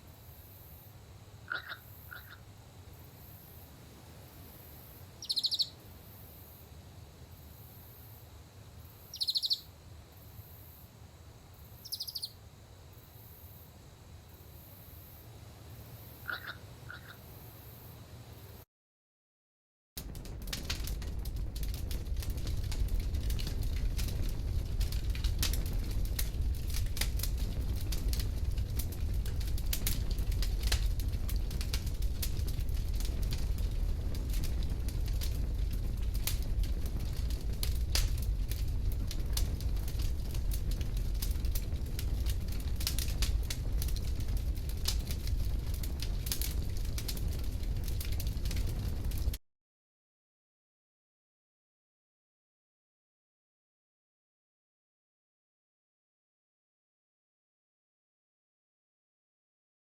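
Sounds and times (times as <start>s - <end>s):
bonfire crackling and popping: 20.0s - 49.4s
low rumble of flames: 20.0s - 49.4s.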